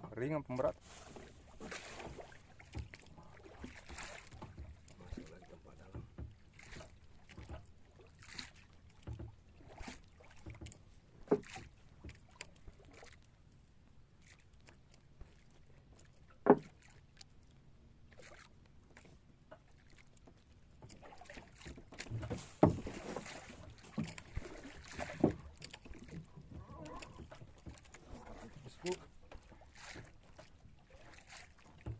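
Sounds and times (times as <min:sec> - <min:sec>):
knocks on a boat: 0:01.6 - 0:04.9, 0:05.8 - 0:07.8, 0:08.9 - 0:09.4, 0:10.3 - 0:12.2, 0:16.4 - 0:16.8, 0:21.6 - 0:28.3, 0:31.7 - 0:31.9.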